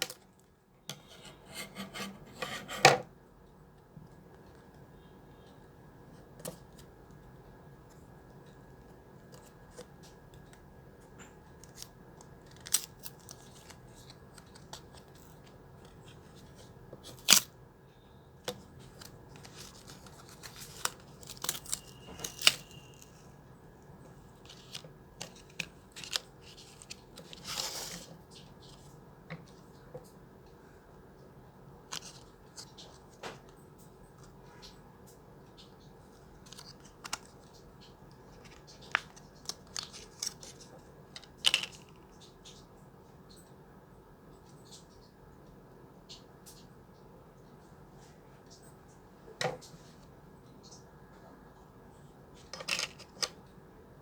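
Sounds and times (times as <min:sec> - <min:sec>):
plastic packaging clicks and snaps: 0:11.6 - 0:16.0, 0:18.5 - 0:23.2
packaging rustle: 0:18.5 - 0:23.3.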